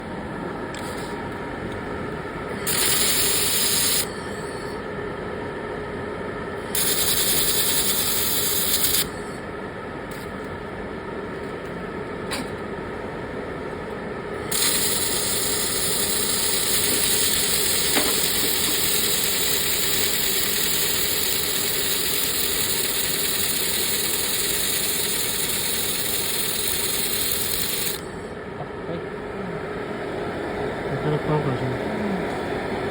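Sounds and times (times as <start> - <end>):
welding machine hum: 0.0 - 4.8, 6.4 - 10.4, 11.2 - 28.5
laser welding hiss and crackle: 2.7 - 4.1, 6.8 - 9.2, 14.5 - 28.2.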